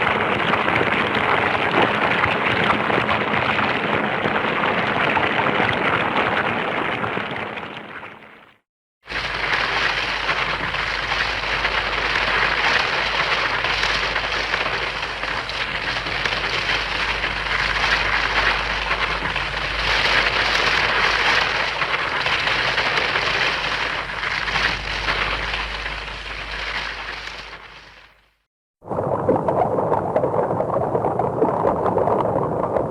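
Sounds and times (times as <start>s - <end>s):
long steady hissing noise: 9.1s - 28.2s
low hum: 9.1s - 28.4s.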